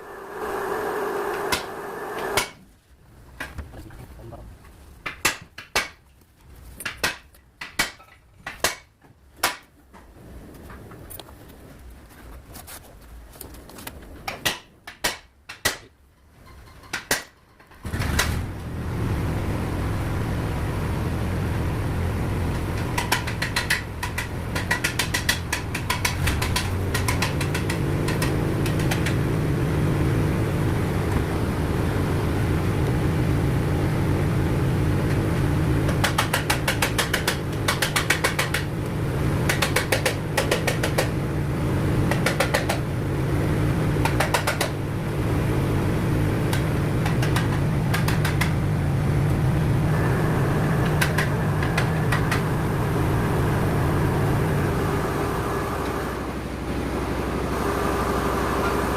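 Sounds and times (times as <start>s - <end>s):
motor humming: 0.0s - 2.4s
hand tools knocking and clinking: 22.8s - 29.2s.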